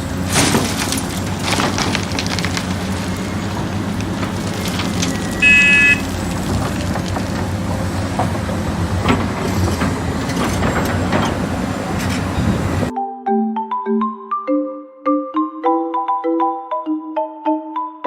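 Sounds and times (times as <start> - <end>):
heavy vehicle engine running: 0.0 - 12.9
loud high-pitched tone: 5.2 - 6.1.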